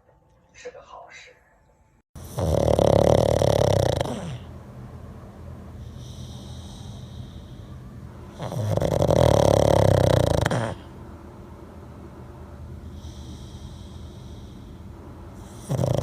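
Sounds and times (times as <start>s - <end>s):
dog snoring loudly: 2.2s - 4.6s, 5.8s - 7.7s, 8.3s - 11.0s, 12.8s - 16.0s.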